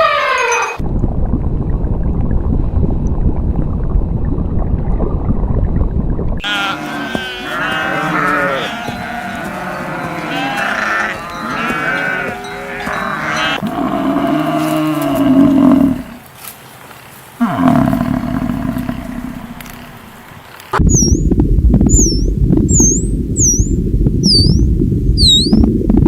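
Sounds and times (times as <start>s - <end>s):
farm animals bleating: 6.4s - 16.2s.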